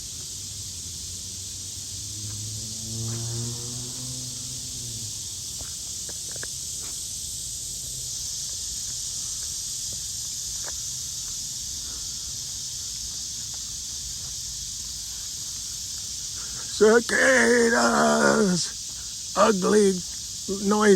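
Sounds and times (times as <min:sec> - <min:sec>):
cicadas calling: 0:00.0 - 0:20.9.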